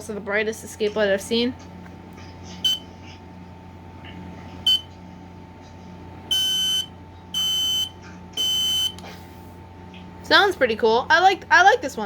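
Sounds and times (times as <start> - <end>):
low steady hum: 0.0 - 12.0
smoke alarm beeping: 2.6 - 2.9, 4.7 - 4.9, 6.3 - 9.0.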